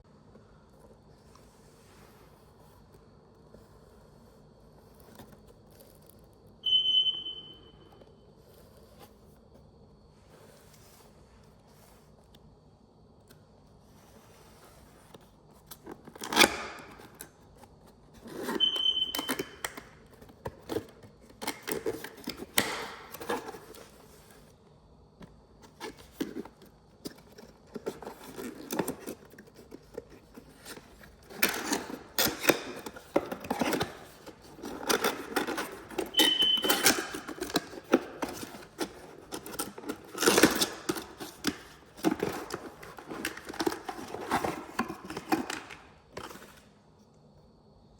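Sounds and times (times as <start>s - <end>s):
brief high beeps: 6.6s - 7.8s, 18.6s - 19.4s, 36.2s - 36.8s
objects being handled: 14.1s - 24.4s, 25.2s - 46.7s.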